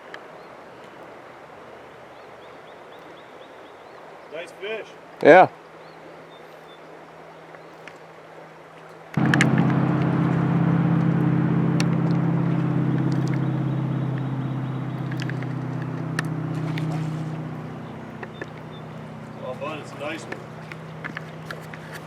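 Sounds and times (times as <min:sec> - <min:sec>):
engine running: 0:09.2 - 0:22.0
faint clicks: 0:14.9 - 0:17.4, 0:18.2 - 0:18.9.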